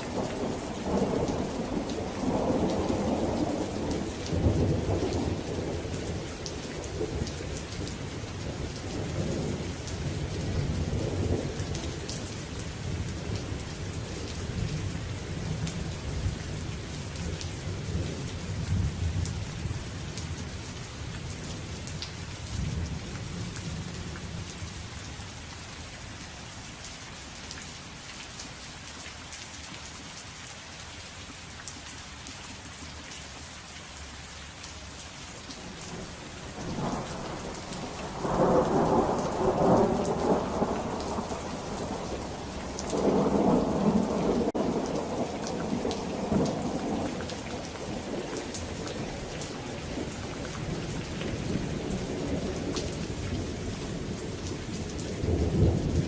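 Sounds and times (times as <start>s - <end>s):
steady rain falling: 0.0s - 56.0s
thunder rumbling: 35.9s - 56.0s.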